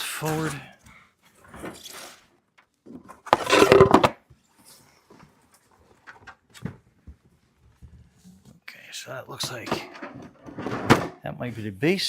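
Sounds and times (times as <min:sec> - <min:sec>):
scraping rustling clatter: 0:03.1 - 0:04.1.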